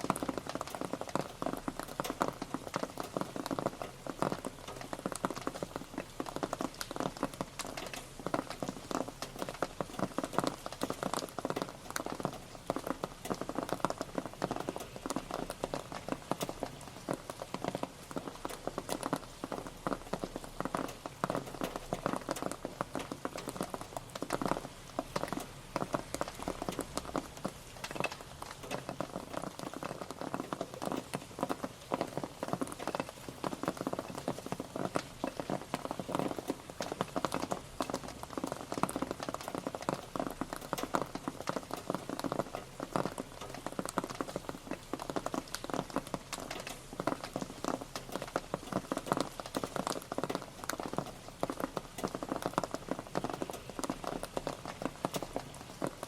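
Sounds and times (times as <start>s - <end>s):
rain pattering: 0.0s - 56.0s.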